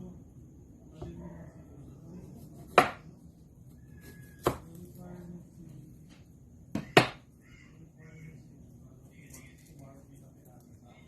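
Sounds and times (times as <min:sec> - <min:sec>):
knife chopping onion: 0:02.2 - 0:05.2, 0:06.7 - 0:07.3.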